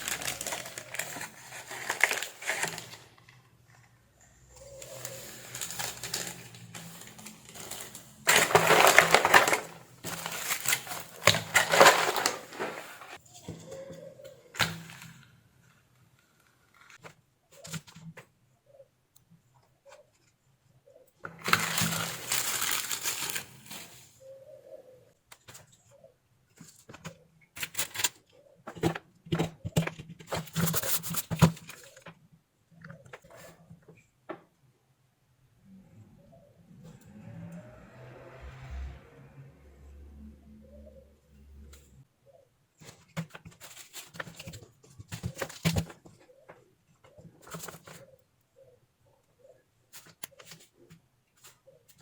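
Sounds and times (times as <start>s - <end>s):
hand tools clicking and scraping: 4.6s - 14.0s.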